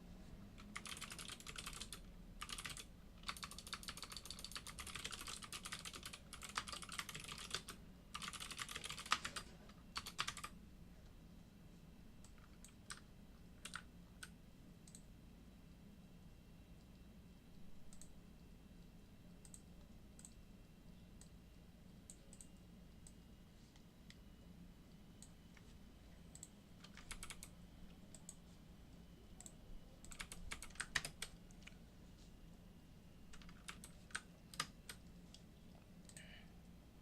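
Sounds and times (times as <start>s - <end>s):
low electrical hum: 0.0s - 37.0s
keyboard typing: 0.6s - 10.6s, 12.2s - 15.1s, 17.9s - 18.2s, 26.3s - 27.5s, 28.1s - 28.5s, 29.4s - 31.8s, 33.3s - 36.4s.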